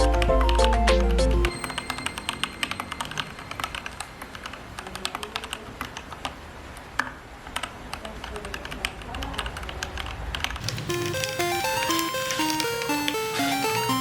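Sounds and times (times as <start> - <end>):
mechanical keyboard typing: 3.7 - 6.3, 7.6 - 14.0.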